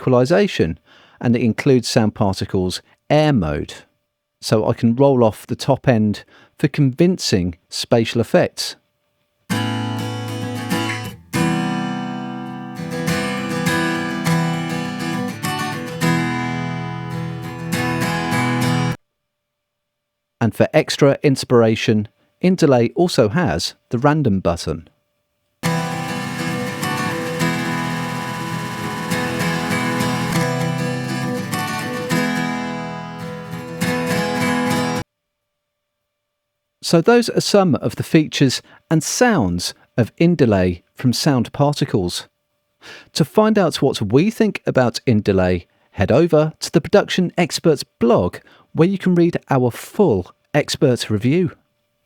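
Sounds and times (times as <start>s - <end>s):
strummed acoustic guitar with echo: 9.5s - 19.0s, 25.6s - 35.0s.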